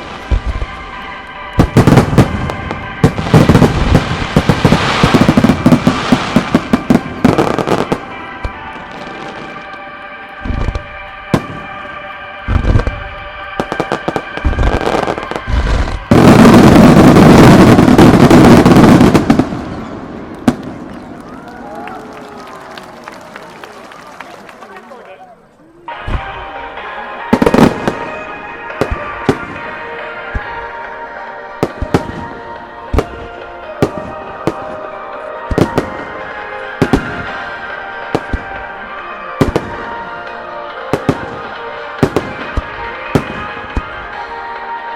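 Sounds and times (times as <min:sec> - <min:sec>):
fireworks exploding: 0:00.0 - 0:24.9, 0:25.9 - 0:44.8
music playing: 0:00.0 - 0:44.9.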